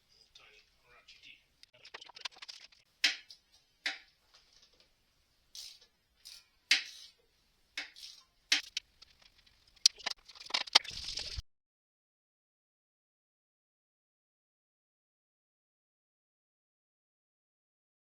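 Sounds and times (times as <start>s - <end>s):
ratchet clicking: 5.6s - 7.2s, 7.8s - 10.1s.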